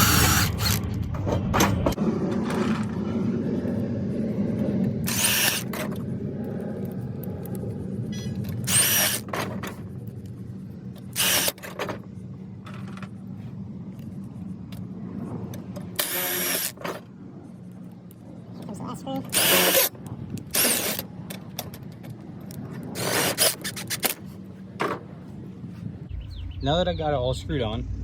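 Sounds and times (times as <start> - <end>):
impact drill driving screws: 0.0 - 0.8, 5.1 - 5.7, 8.7 - 9.3, 11.2 - 11.6, 16.0 - 16.8, 19.3 - 19.9, 20.6 - 21.0
steady low rumble: 0.0 - 23.1, 24.2 - 28.0.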